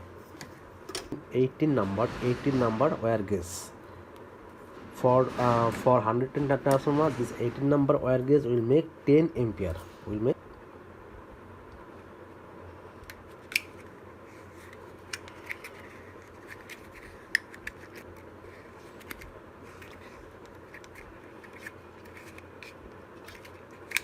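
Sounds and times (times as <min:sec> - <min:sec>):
steady hiss: 0:01.3 - 0:10.4.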